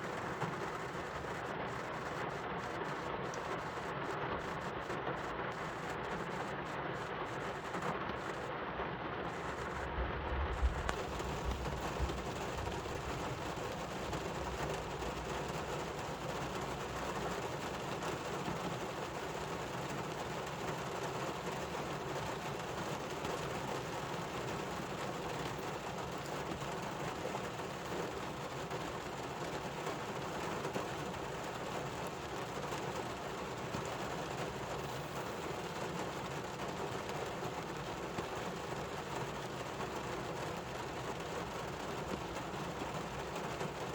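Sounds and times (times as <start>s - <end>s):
steady rain falling: 0.0s - 43.9s
low rumble: 9.7s - 12.2s.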